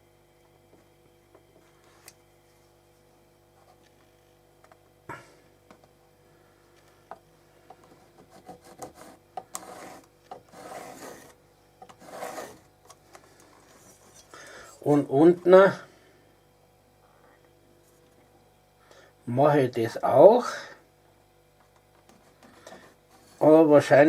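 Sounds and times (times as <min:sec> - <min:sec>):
marking tool scratching leather: 0:08.2 - 0:12.7.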